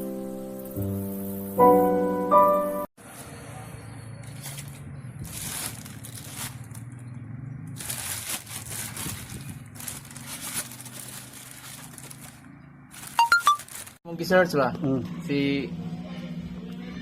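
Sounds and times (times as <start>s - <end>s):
crinkling and crackling: 4.2s - 14.0s.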